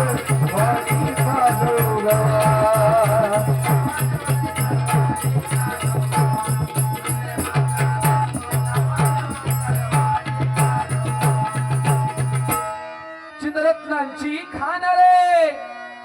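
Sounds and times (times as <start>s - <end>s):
hand drum beat: 0.0s - 12.8s
jingling percussion: 0.0s - 13.3s.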